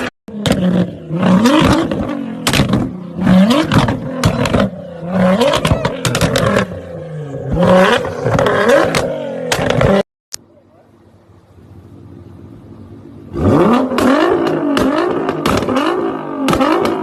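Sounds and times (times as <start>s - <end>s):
sports car engine revving: 0.0s - 10.0s, 10.9s - 17.0s
exhaust pops and crackles: 0.4s - 4.8s, 5.4s - 6.7s, 7.4s - 10.4s, 13.9s - 17.0s.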